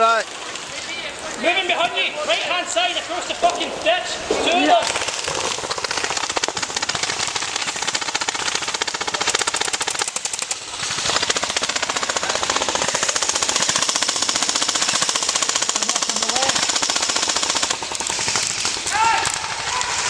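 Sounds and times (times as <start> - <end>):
airsoft guns firing bursts: 4.4 - 20.0.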